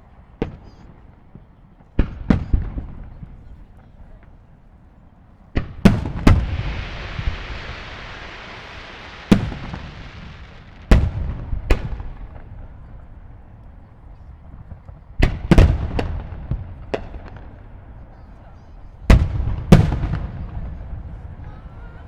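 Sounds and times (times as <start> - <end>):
fireworks booming: 0.4 - 4.4, 5.5 - 22.0
hissing crackle: 6.1 - 11.6.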